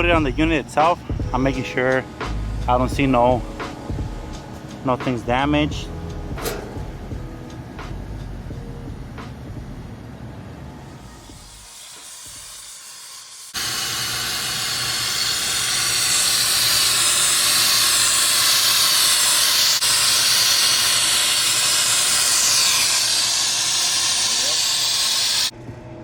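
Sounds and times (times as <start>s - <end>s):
pressurized gas hissing: 10.9s - 25.5s.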